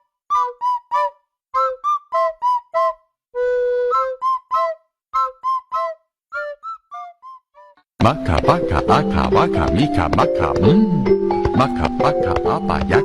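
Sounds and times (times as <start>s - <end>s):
high-pitched whistle-like notes: 0.3s - 7.8s.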